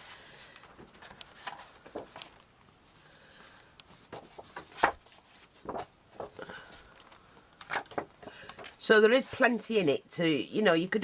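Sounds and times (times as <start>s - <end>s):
paper and card rustling: 0.0s - 2.5s, 3.8s - 10.1s.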